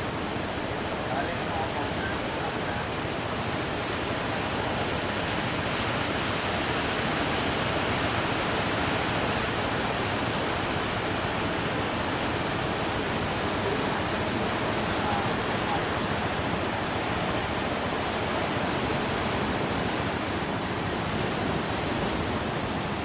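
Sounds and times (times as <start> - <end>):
wind: 0.0 - 23.0.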